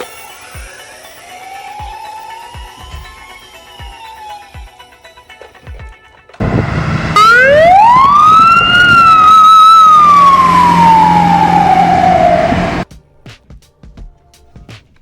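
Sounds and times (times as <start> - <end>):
emergency vehicle siren wail: 0.8 - 4.9, 6.4 - 12.8.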